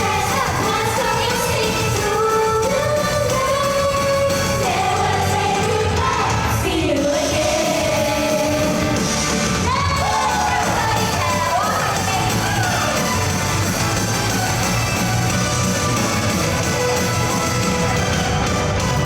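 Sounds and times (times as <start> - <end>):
woman singing: 0.0 - 9.0
loud pop backing track: 0.0 - 19.0.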